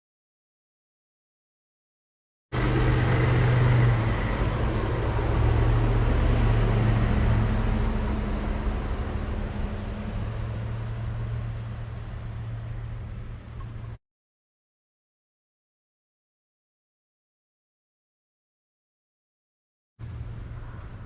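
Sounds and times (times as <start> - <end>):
vehicle engine running: 2.6 - 14.0.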